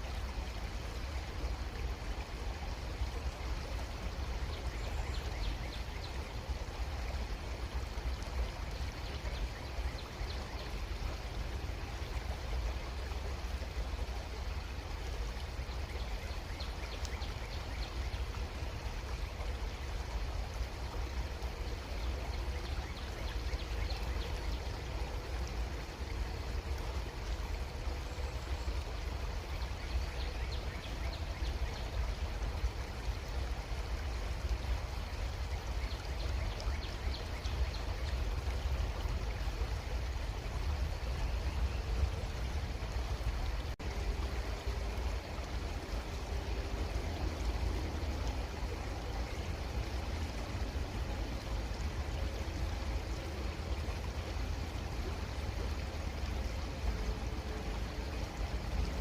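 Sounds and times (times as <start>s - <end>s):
creek water flowing: 0.0s - 59.0s.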